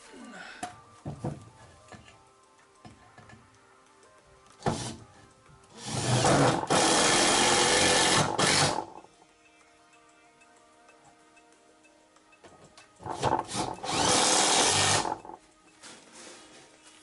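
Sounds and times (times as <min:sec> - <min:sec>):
handheld power tool running: 0:05.8 - 0:09.0, 0:13.1 - 0:15.4.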